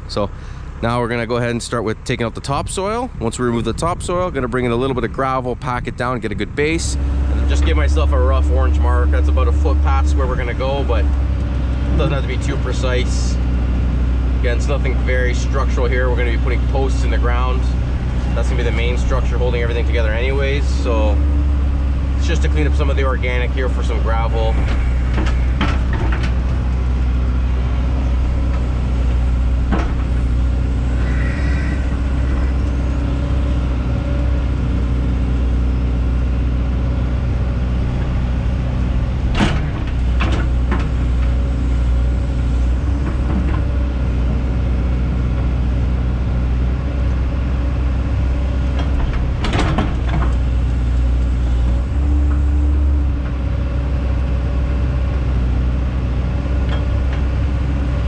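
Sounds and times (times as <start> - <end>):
excavator diesel engine running: 0.0 - 58.0.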